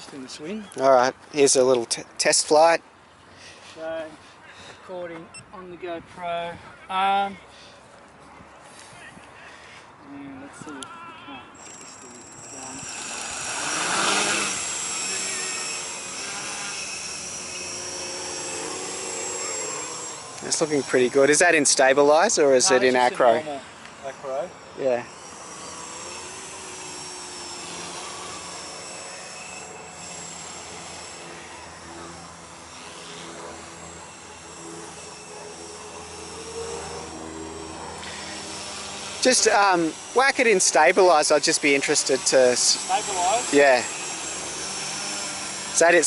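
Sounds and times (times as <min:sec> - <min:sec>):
quadcopter motors buzzing: 0:00.0 - 0:05.7, 0:08.8 - 0:46.0.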